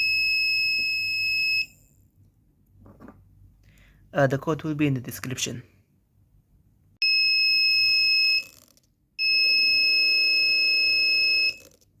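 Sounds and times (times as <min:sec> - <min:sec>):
high-pitched buzzer tone: 0:09.2 - 0:11.7.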